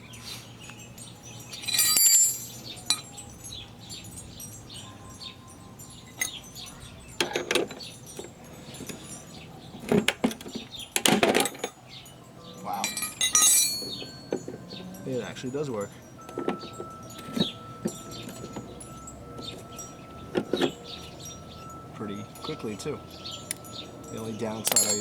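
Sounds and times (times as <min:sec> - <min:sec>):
wrenches clanking against padlock: 0:00.0 - 0:25.0
padlock shackle breaking: 0:01.0 - 0:03.6, 0:06.1 - 0:11.8, 0:12.7 - 0:14.6, 0:23.3 - 0:23.9, 0:24.5 - 0:25.0.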